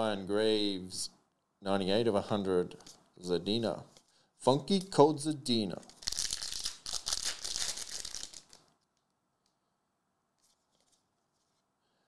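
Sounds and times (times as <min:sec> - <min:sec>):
card pack wrapper tearing and crinkling: 0:05.8 - 0:08.7.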